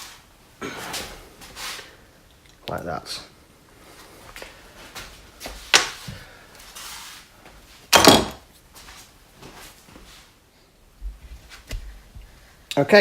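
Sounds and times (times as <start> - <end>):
tools clattering on workbench: 7.9 - 8.4.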